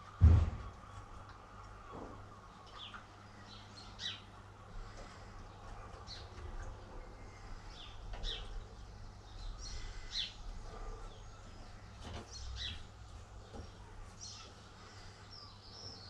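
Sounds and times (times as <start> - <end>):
birds chirping: 0.0 - 16.0.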